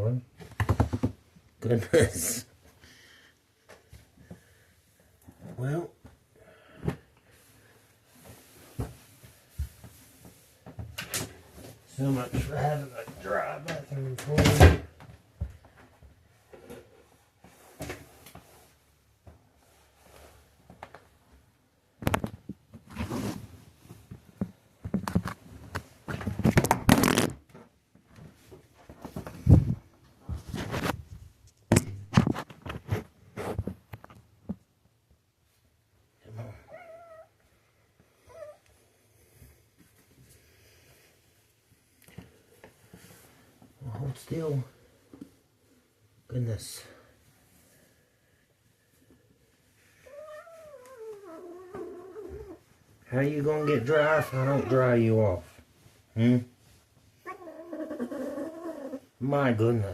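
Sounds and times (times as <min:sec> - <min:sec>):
towel rustling and rubbing: 0:07.3 - 0:10.8, 0:22.9 - 0:24.3, 0:49.5 - 0:57.6.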